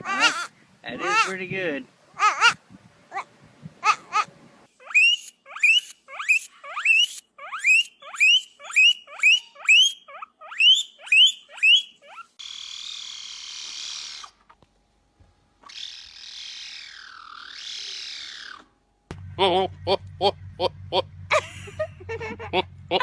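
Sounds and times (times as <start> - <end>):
animal squeaky calls: 0.0 - 1.4, 2.2 - 14.4, 15.6 - 18.7.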